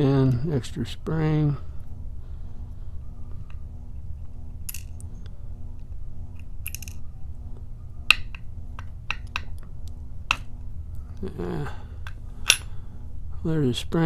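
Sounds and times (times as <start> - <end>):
steady low hum: 0.0 - 14.0
small metal parts clicking: 6.3 - 7.1, 12.0 - 12.7.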